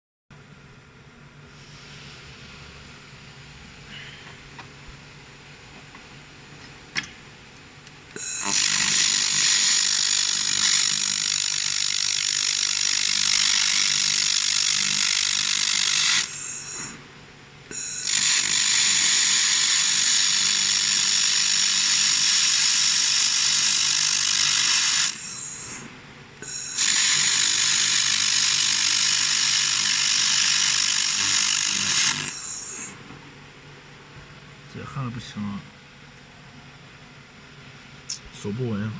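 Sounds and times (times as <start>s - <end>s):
laser welder hissing: 8.2s - 17.0s, 17.7s - 32.9s.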